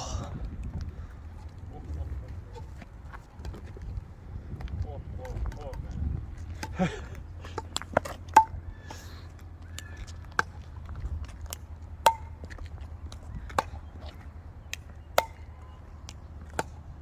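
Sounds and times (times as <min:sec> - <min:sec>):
paddle hitting ball pocks: 0:06.4 - 0:06.8, 0:07.4 - 0:08.7, 0:10.2 - 0:10.9, 0:11.5 - 0:17.0.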